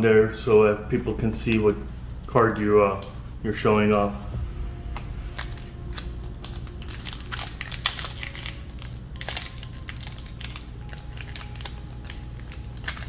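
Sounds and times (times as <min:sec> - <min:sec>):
steady low hum: 0:00.0 - 0:13.0
foil pack tearing and crinkling: 0:05.3 - 0:13.0.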